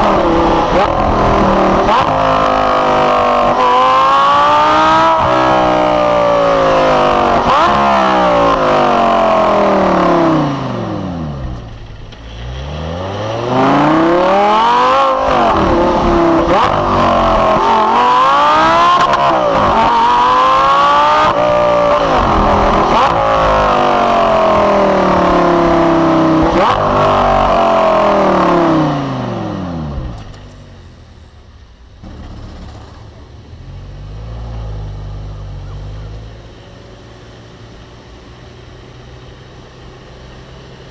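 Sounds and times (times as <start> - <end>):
sports car engine accelerating: 0.0 - 31.2.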